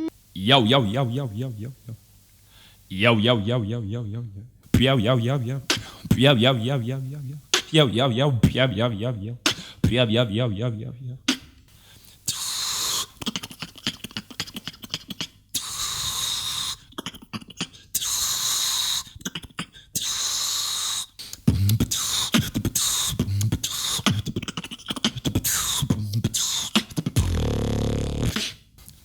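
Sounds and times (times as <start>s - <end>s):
person beatboxing: 4.7s - 10.1s, 10.8s - 11.6s, 12.3s - 29.0s.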